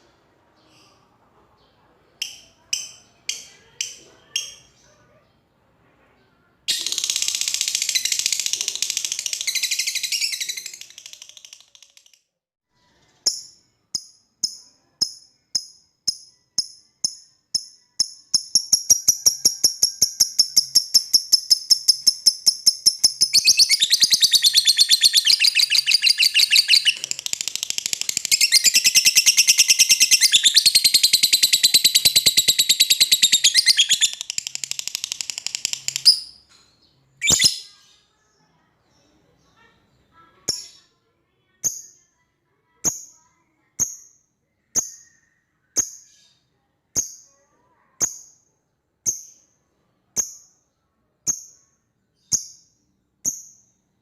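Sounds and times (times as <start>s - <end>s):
lovebird chattering song: 6.7s - 12.1s, 13.3s - 36.4s, 37.2s - 37.8s.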